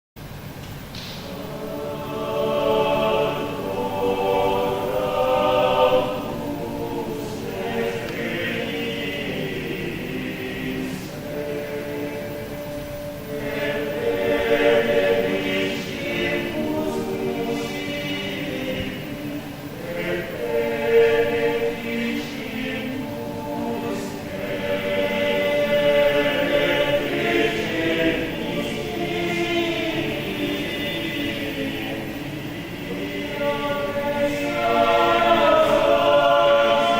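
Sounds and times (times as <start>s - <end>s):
choir singing held notes: 0.4s - 36.9s.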